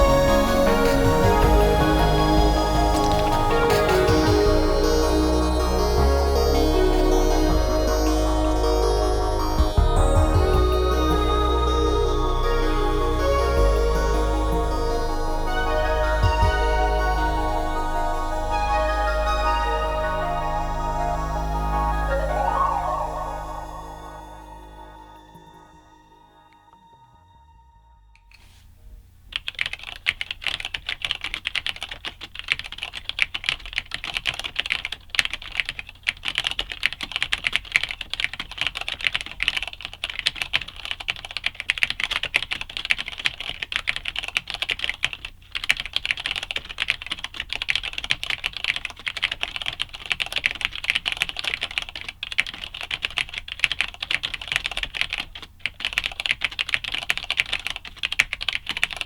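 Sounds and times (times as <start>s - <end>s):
fast typing on mechanical keyboard: 29.3s - 59.0s.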